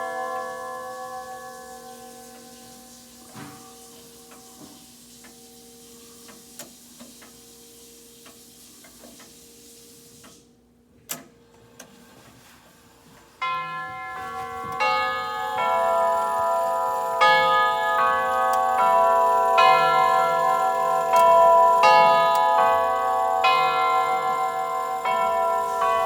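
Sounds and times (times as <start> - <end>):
faint steady chime tones: 0.0 - 4.4, 13.4 - 26.0
tubular chimes ringing: 13.4 - 26.0
clock ticking: 14.7 - 26.0.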